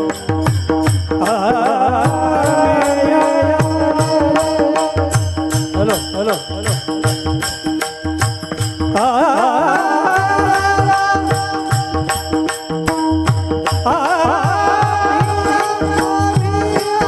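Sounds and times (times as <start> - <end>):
man singing devotional song: 0.0 - 17.0
sustained accompaniment: 0.0 - 17.0.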